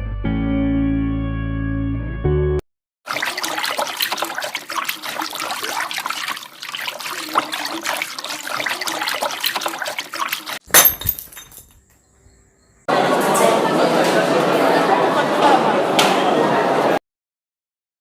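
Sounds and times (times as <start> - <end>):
water trickling and splashing: 3.0 - 11.6.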